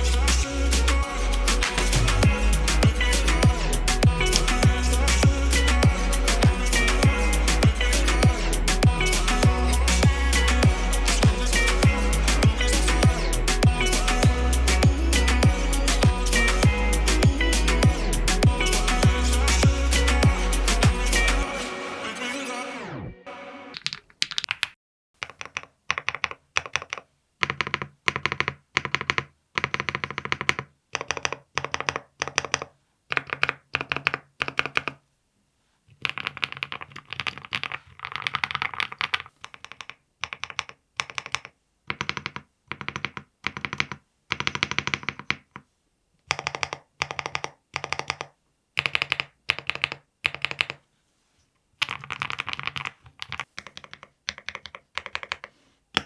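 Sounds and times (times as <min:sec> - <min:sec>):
mechanical keyboard keys clacking: 0:23.8 - 0:35.0.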